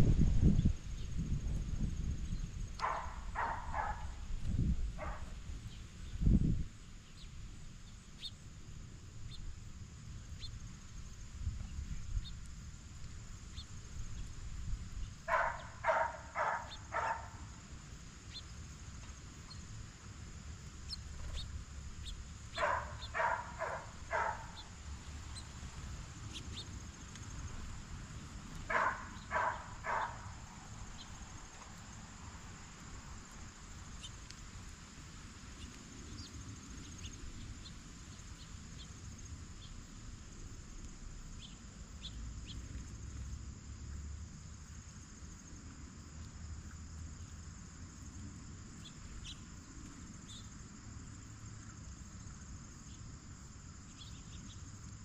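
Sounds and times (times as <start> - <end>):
blue jay calling: 15.3 - 17.3, 22.0 - 25.5, 28.7 - 30.3.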